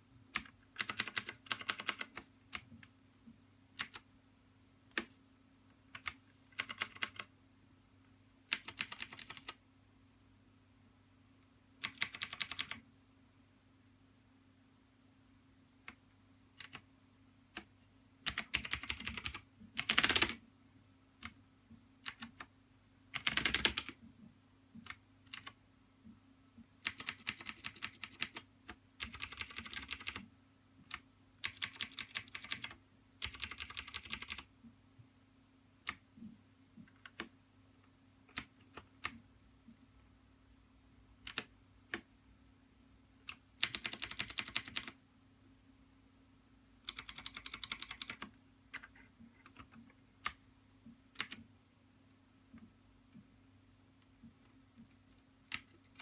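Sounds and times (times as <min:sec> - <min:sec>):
mechanical keyboard typing: 0:00.4 - 0:02.7, 0:03.8 - 0:04.1, 0:06.0 - 0:07.3, 0:08.5 - 0:09.6, 0:11.8 - 0:12.8, 0:16.6 - 0:16.9, 0:18.3 - 0:20.4, 0:22.0 - 0:22.5, 0:23.1 - 0:24.0, 0:24.9 - 0:25.6, 0:26.8 - 0:30.3, 0:30.9 - 0:34.5, 0:37.0 - 0:37.3, 0:41.2 - 0:42.1, 0:43.3 - 0:45.0, 0:46.9 - 0:50.4, 0:51.2 - 0:51.5, 0:55.5 - 0:56.0.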